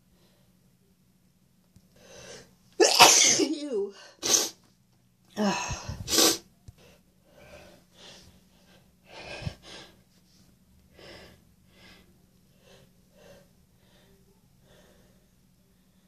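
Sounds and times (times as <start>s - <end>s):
person sniffing stuffy nose: 4.2s - 4.6s, 5.8s - 6.4s.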